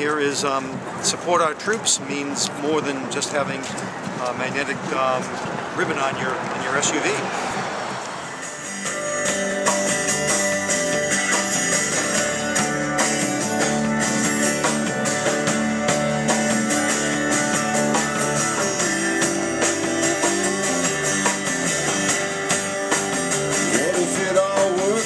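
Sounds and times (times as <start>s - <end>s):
rock music with strummed guitar: 8.4s - 25.0s.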